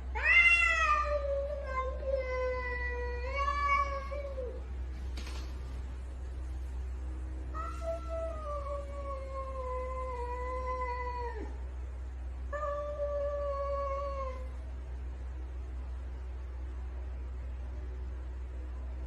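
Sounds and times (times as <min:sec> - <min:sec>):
cat meowing: 0:00.2 - 0:04.6.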